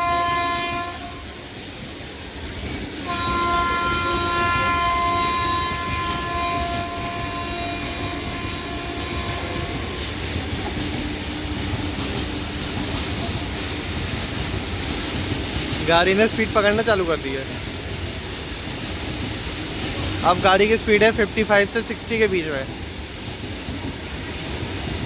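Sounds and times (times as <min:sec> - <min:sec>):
train air horn: 0:00.0 - 0:01.4, 0:03.0 - 0:10.2
freight train wagons rumbling: 0:00.0 - 0:25.0.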